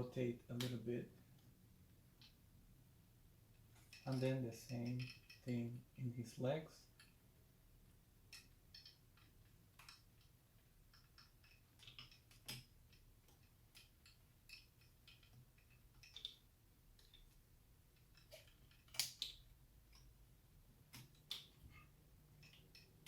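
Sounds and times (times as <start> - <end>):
plastic toy legs clicking: 3.8 - 5.5, 8.2 - 20.2, 20.8 - 21.7, 22.3 - 23.0.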